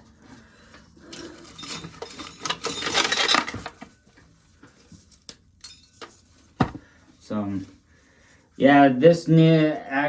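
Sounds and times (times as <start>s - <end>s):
corn kernels rattling into metal can: 1.6s - 3.8s.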